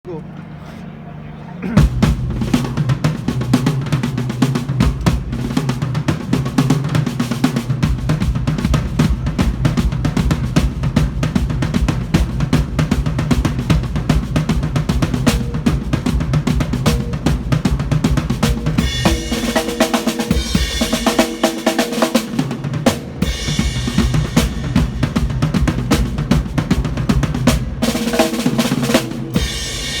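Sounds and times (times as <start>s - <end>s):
drum kit played fast: 1.8s - 30.0s.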